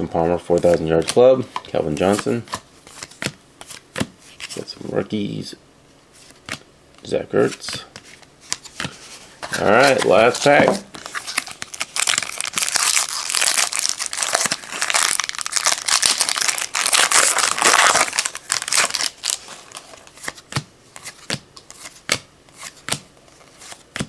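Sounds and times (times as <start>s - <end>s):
wrapper crinkling: 9.5s - 20.4s
cards snapping as flicked: 20.2s - 23.1s.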